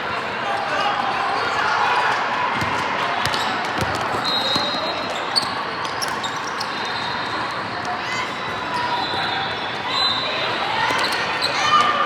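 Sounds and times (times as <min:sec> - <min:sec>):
murmur of hall: 0:00.0 - 0:12.0
sneakers squeaking on floor: 0:02.6 - 0:12.0.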